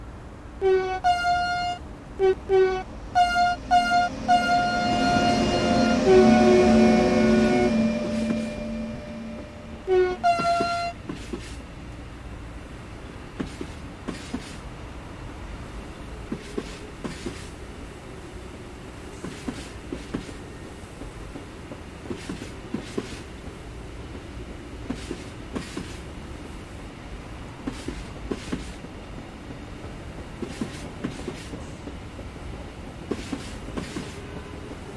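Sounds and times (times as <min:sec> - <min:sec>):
freight train rumbling past: 0:00.0 - 0:34.9
locomotive horn toots: 0:00.6 - 0:11.0.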